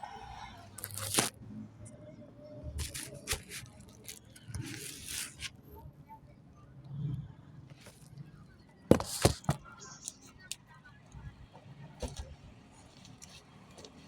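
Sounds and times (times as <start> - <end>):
packaging rustling and scraping: 0.8 - 1.4, 2.8 - 5.5, 8.9 - 9.7.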